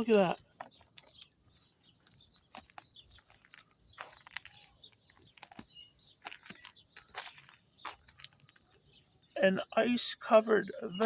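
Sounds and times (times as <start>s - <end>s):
ice glaze crackling: 2.3s - 5.6s, 6.2s - 9.2s.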